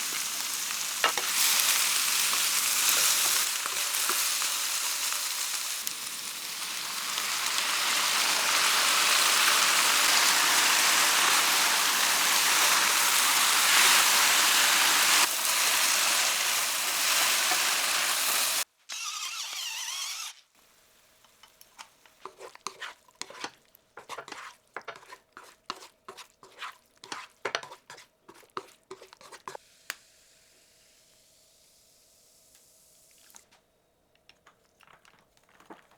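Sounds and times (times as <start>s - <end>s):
food sizzling in a pan: 0.0s - 18.7s.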